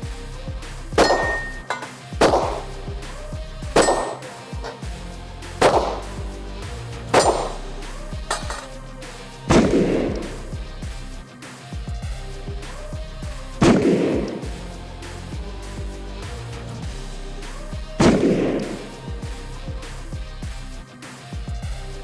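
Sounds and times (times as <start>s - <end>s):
background music: 0.0s - 22.0s
steel plate clanging: 1.0s - 2.6s, 3.8s - 4.8s, 8.3s - 8.8s
revolver shots: 1.0s - 2.9s, 3.7s - 5.0s, 5.6s - 6.3s, 7.1s - 8.7s.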